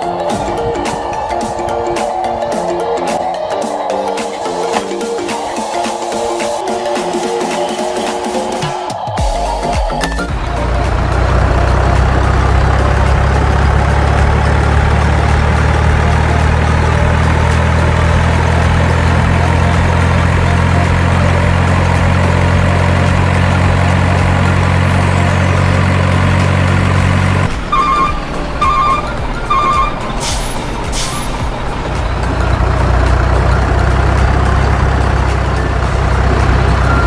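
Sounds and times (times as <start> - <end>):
truck engine idling: 9.2 - 37.0
reversing alarm beeping: 27.7 - 31.3.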